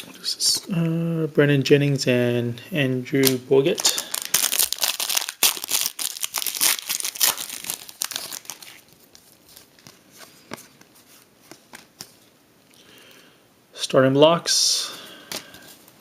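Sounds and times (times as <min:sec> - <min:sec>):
cards being handled: 0:03.2 - 0:12.3
foil wrapper crinkling and tearing: 0:03.8 - 0:09.9.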